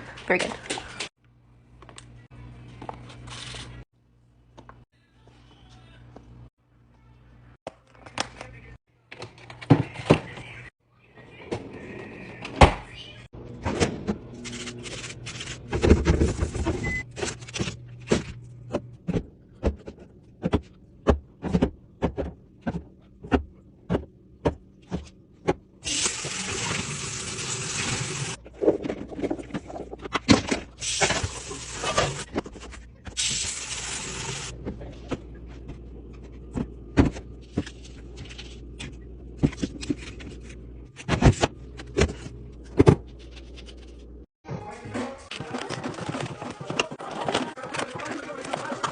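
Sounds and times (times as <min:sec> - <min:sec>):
groceries clicking and knocking: 0:45.1 - 0:48.9.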